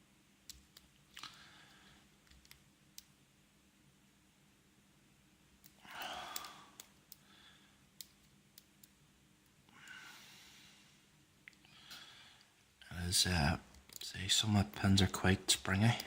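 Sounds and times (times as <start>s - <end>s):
breathy exhalations: 5.8s - 7.8s.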